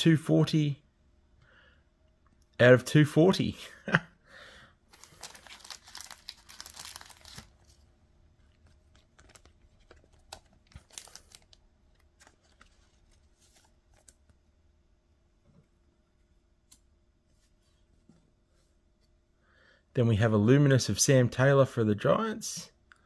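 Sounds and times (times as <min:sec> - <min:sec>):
cards clicking and rustling: 0:04.9 - 0:07.8, 0:08.5 - 0:14.2
wrapper crinkling: 0:04.9 - 0:07.8, 0:08.5 - 0:14.2.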